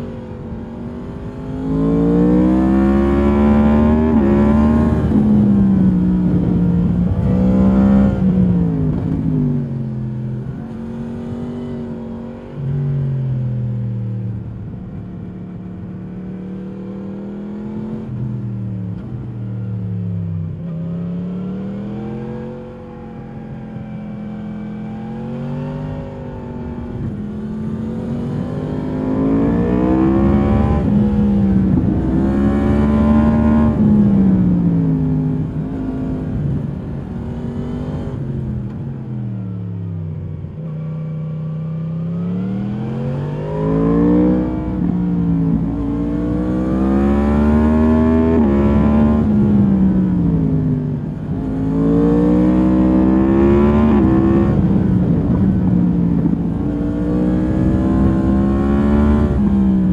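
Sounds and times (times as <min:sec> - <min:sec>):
motorcycle engine revving: 0:00.9 - 0:13.1, 0:16.3 - 0:59.9.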